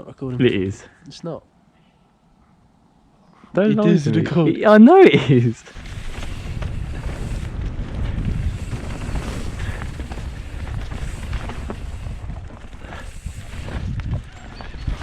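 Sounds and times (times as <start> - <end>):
bike clicks and rattles: 5.6 - 15.0
wind buffeting microphone: 5.7 - 15.0.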